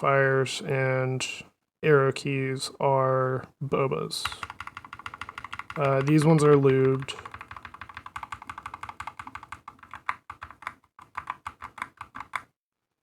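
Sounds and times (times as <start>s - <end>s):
mechanical keyboard key clacks: 4.4s - 12.5s.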